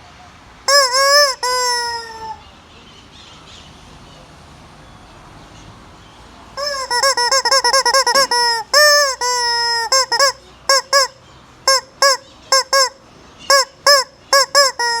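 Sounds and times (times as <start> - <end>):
rubber chicken toy squawking: 0.7 - 2.4, 6.6 - 15.0.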